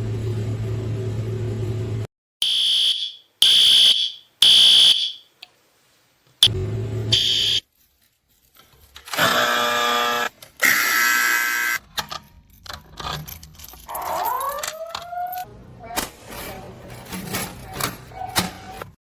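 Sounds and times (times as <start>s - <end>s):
fire alarm sounder blasts: 2.4s - 5.2s, 7.2s - 7.6s.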